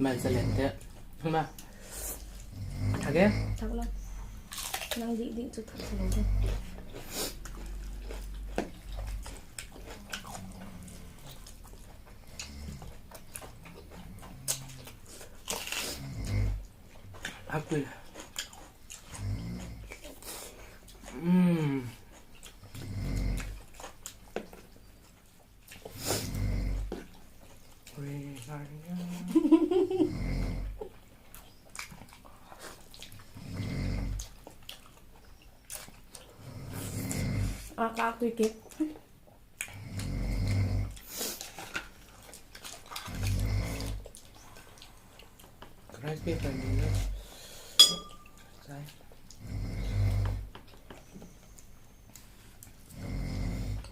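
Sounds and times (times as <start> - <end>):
deep slow snoring: 0.0 - 0.8, 2.3 - 4.2, 5.8 - 9.2, 10.1 - 11.4, 12.2 - 13.0, 15.9 - 16.7, 19.1 - 19.9, 22.7 - 23.6, 25.9 - 26.9, 29.9 - 30.8, 33.3 - 34.2, 36.4 - 37.7, 39.7 - 41.0, 43.1 - 44.0, 46.2 - 47.7, 49.4 - 50.5, 52.8 - 53.9
biting and chewing: 0.0 - 28.8, 30.7 - 47.3.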